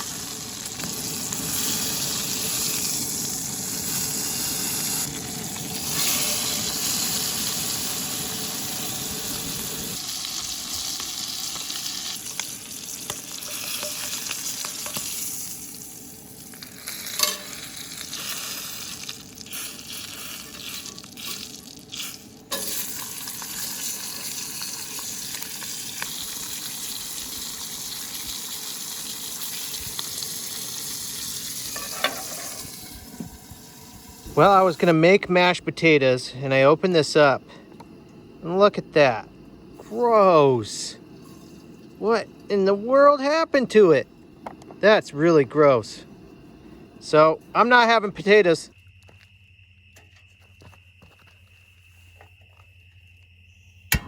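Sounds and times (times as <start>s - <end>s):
meat sizzling in a pan: 0.0s - 35.1s.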